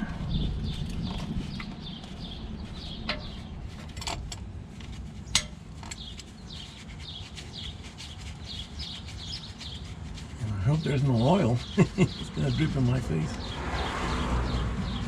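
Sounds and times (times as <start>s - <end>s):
birds chirping: 0.0s - 15.0s
hand tools clicking on metal: 5.3s - 6.2s.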